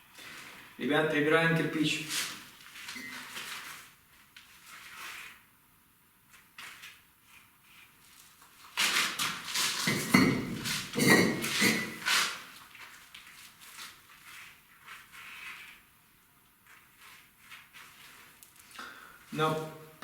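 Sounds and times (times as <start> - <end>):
bricks knocking and clinking: 9.8 - 12.0.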